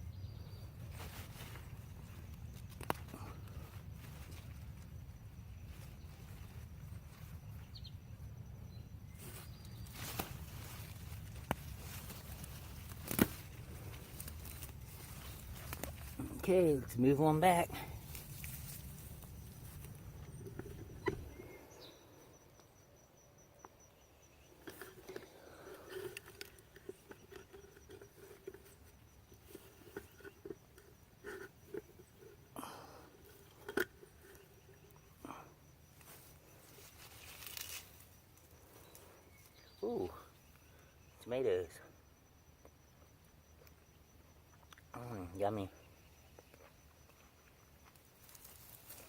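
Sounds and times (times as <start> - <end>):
soil being dug: 9.1 - 22.0, 24.2 - 39.8, 47.9 - 49.0
shovel knocks and scrapes in soil: 9.2 - 17.2
potatoes being handled: 9.2 - 21.4.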